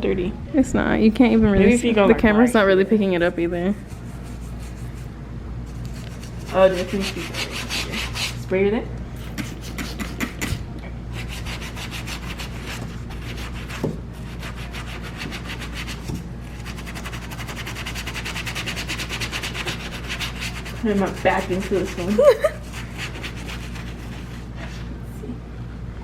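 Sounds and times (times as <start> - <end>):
steady low hum: 0.0 - 26.0
scrubbing car interior trim: 11.2 - 24.4.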